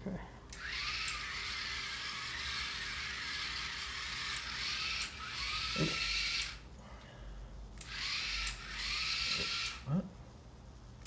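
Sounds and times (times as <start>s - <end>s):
small electric motors whining: 0.5s - 6.6s, 7.8s - 9.8s.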